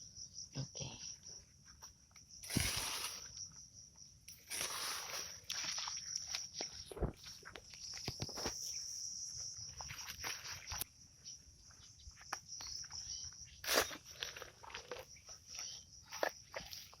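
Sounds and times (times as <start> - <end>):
insects buzzing trill: 0.0 - 17.0
footsteps scuffing in soil: 4.5 - 8.8, 9.5 - 10.9.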